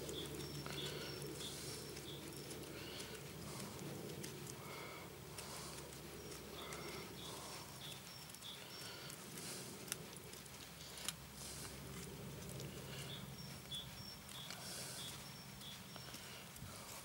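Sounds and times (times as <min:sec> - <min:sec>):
faint bird chirps: 0:00.0 - 0:03.8, 0:04.7 - 0:09.7, 0:12.7 - 0:16.9.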